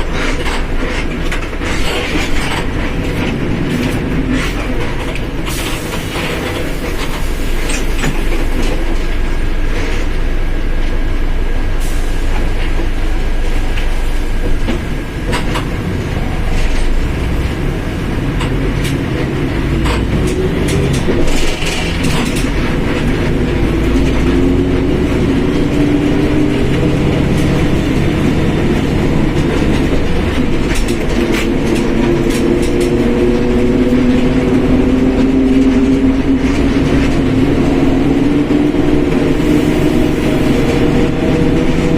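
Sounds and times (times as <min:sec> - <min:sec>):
bus drivetrain and road noise: 0:00.0 - 0:41.9
rattles and knocks: 0:18.3 - 0:39.3.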